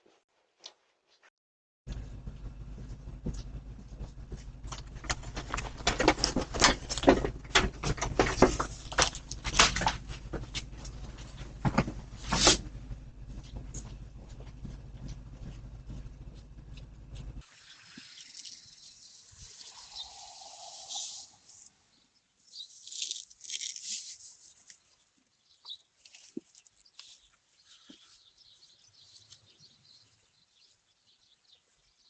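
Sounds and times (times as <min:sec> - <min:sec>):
knocks taps and clicks: 0:01.9 - 0:12.0
microphone low hum: 0:01.9 - 0:17.4
scraping: 0:01.9 - 0:17.4.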